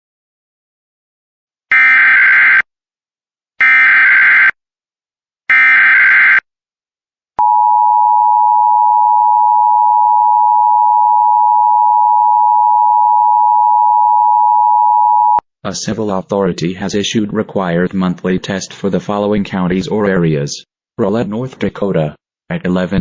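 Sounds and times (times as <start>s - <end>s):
steady attention tone: 7.4s - 15.4s.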